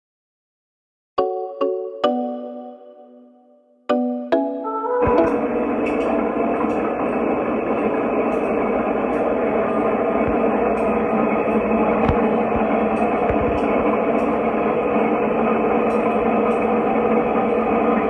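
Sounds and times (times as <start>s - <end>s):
washing machine spinning loudly: 5.0s - 18.0s.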